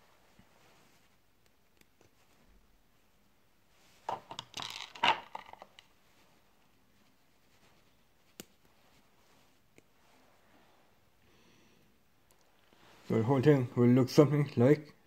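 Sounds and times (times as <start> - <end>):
plastic pieces clattering: 4.1 - 5.9.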